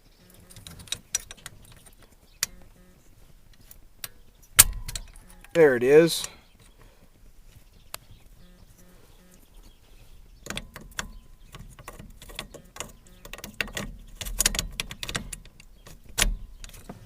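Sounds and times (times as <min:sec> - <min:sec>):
lock parts clicking and rattling: 0:00.2 - 0:02.7, 0:03.5 - 0:06.8, 0:10.4 - 0:17.0.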